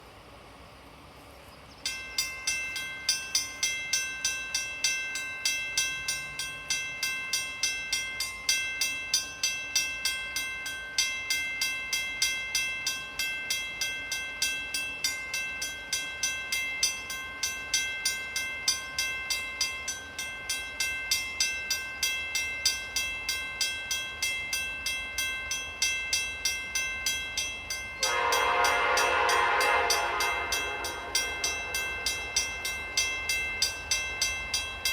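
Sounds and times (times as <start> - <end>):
railroad crossing bell ringing: 1.7 - 34.9
locomotive air horn: 28.0 - 32.4.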